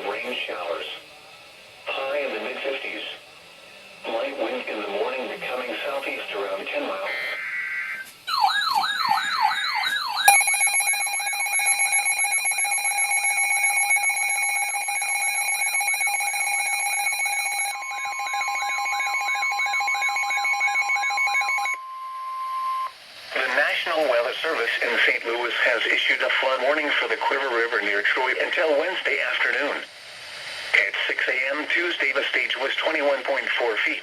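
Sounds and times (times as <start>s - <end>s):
data burst tones: 7.0s - 23.8s
warbling alarm sweeping up: 7.1s - 22.9s
steady alert tones: 8.3s - 21.8s.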